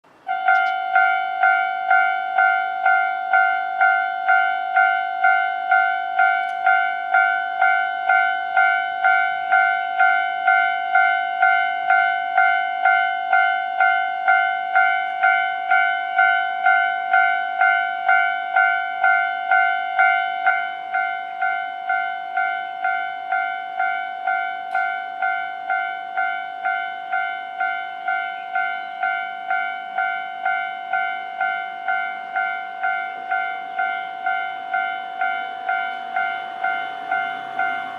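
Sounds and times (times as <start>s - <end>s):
level crossing bell two-tone ding: 0.3s - 9.0s.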